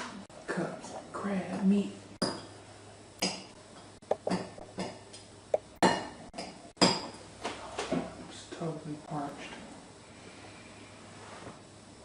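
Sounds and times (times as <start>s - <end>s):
hard objects knocking: 4.0s - 5.0s.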